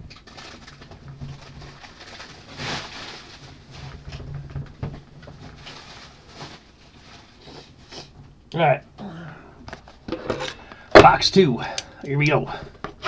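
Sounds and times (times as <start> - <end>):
foil wrappers crinkling: 0.0 - 7.8.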